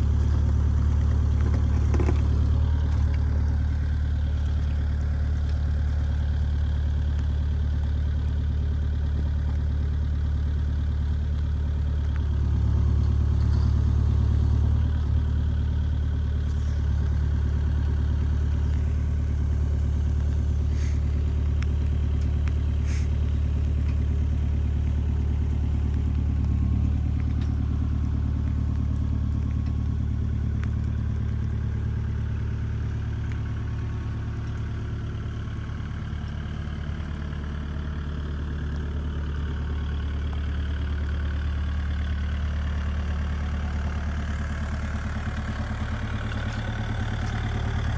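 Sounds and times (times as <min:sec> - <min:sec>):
engine idling: 0:00.0 - 0:47.9.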